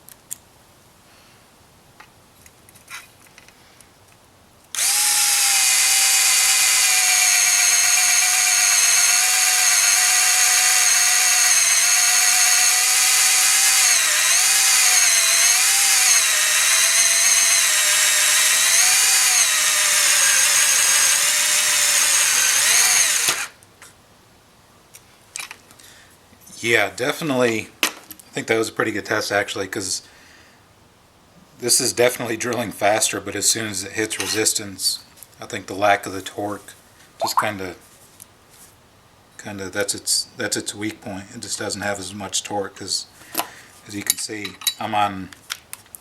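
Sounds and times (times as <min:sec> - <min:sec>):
cordless screwdriver motor whine: 0:04.7 - 0:23.5.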